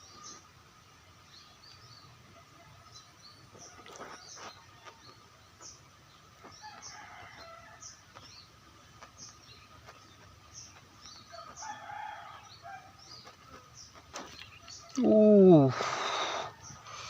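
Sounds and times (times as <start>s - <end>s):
small birds chirping: 0.0s - 17.0s
distant rooster crowing: 6.5s - 8.0s, 11.3s - 13.0s.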